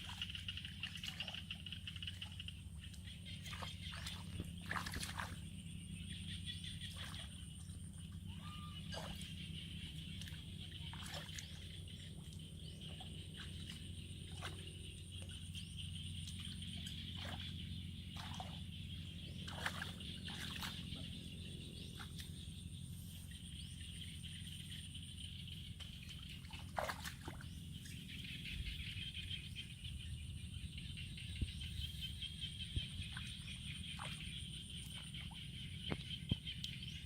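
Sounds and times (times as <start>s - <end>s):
low hum: 0.0s - 37.0s
water splashes: 3.3s - 5.7s, 6.8s - 15.3s, 16.2s - 22.4s, 25.7s - 28.5s, 32.8s - 36.9s.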